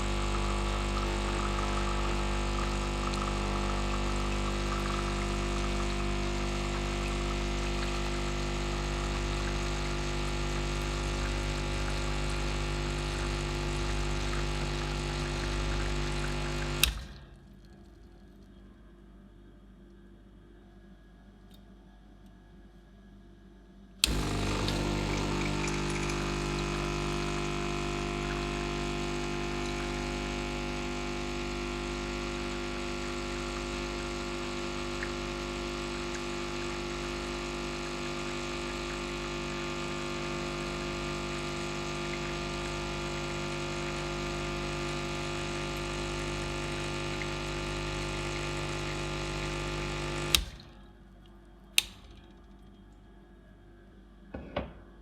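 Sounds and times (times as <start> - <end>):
espresso machine pump buzzing: 0.0 - 17.1, 24.0 - 50.7.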